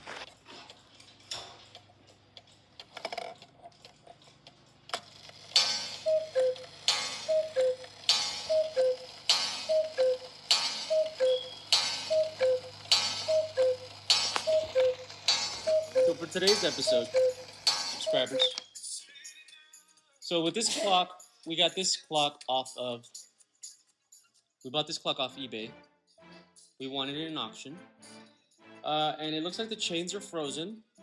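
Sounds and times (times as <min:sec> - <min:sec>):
cuckoo clock calling: 0:05.0 - 0:18.8.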